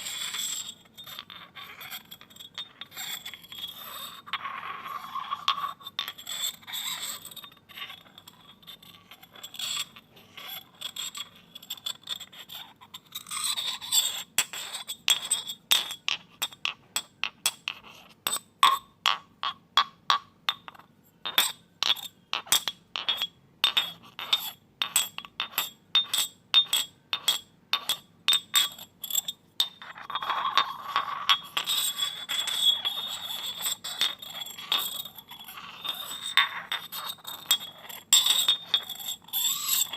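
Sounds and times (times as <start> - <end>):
glass scraping on glass: 0.0 - 39.9
glass clinking and tapping: 2.2 - 3.7, 18.3 - 39.9.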